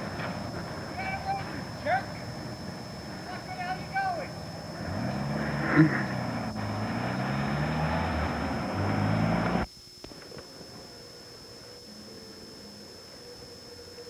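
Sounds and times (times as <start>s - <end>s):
engine running: 0.0s - 9.7s.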